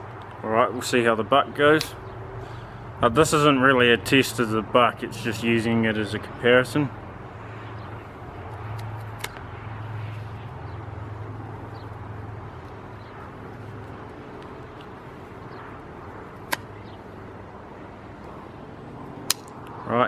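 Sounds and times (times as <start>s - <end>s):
sharp clicks: 8.6s - 9.5s, 16.4s - 17.0s, 19.2s - 19.8s.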